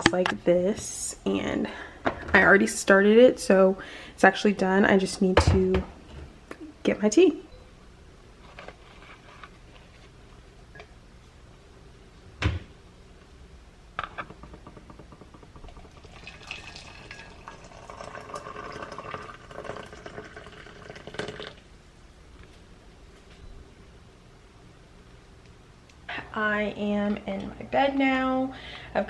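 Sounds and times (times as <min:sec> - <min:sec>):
water pouring into a mug: 0:15.7 - 0:21.6.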